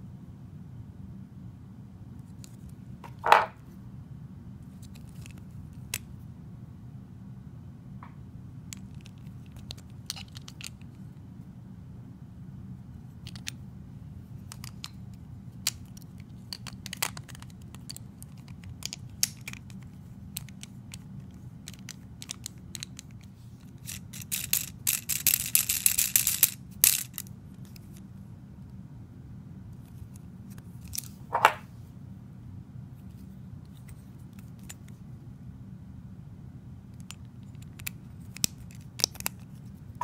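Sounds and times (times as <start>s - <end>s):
steady low hum: 0.0s - 40.0s
plastic parts clicking: 8.7s - 10.8s, 13.3s - 13.6s, 15.7s - 21.0s, 21.7s - 27.9s, 37.0s - 39.4s.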